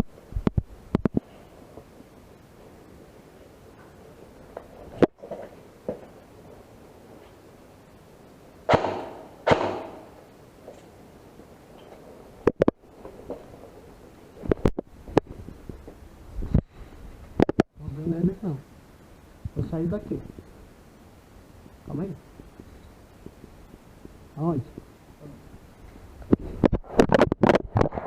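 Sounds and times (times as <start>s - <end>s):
airsoft gun shots: 8.7s - 10.2s.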